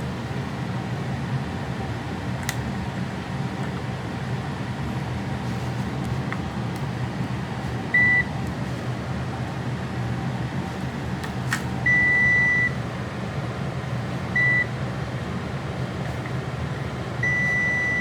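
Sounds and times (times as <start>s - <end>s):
low background hum: 0.0s - 18.0s
multimeter electronic beep: 8.0s - 8.3s, 11.8s - 12.8s, 14.4s - 14.7s, 17.2s - 18.0s.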